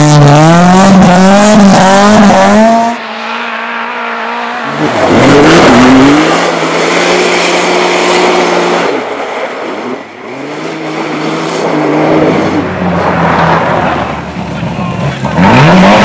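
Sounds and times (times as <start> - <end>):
race car engine revving: 0.0 - 9.1, 9.7 - 16.0.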